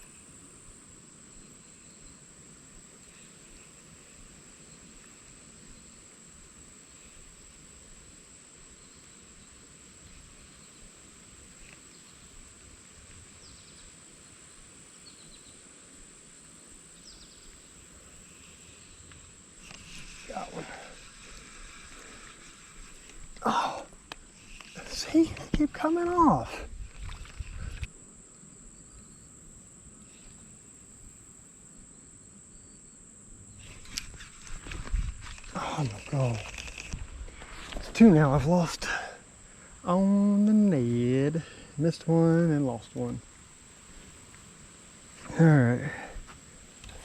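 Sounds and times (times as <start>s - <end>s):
crickets trilling: 0.0s - 47.0s
faint outdoor background noise: 0.0s - 47.0s
high-pitched insect drone: 17.0s - 29.3s, 32.5s - 43.4s.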